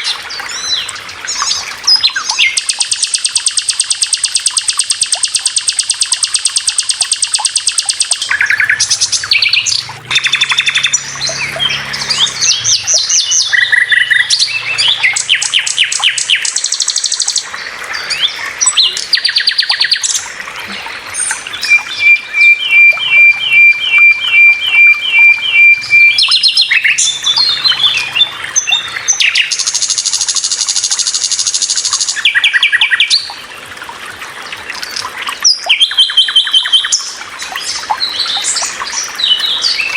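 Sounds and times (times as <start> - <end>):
birds chirping and trilling: 0.0 - 33.6, 34.5 - 39.9
bird repeating even notes: 2.4 - 17.6, 21.3 - 32.7.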